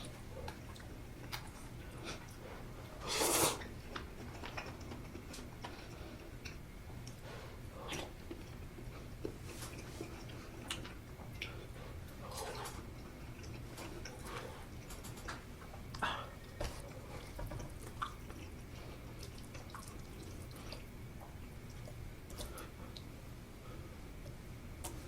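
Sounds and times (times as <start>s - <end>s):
loud slurp: 3.0s - 3.7s
wet chewing: 3.3s - 7.2s, 7.8s - 23.1s.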